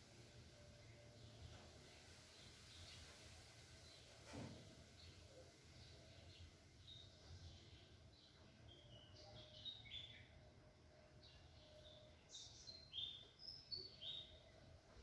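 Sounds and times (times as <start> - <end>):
small birds chirping: 0.7 - 4.2, 4.9 - 15.0.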